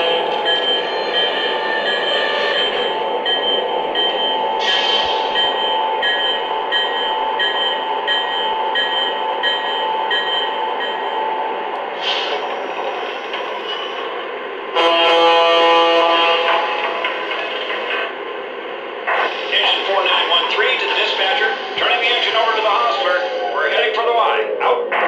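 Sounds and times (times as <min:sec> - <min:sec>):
electric locomotive running sounds: 0:00.0 - 0:25.0
short hisses: 0:12.0 - 0:12.7.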